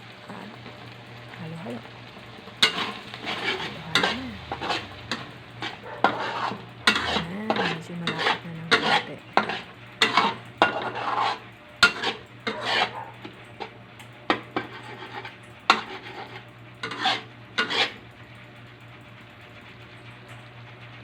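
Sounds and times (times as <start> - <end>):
low steady hum: 0.0 - 20.9
utensil scraping a pan: 2.6 - 13.7, 14.3 - 18.0.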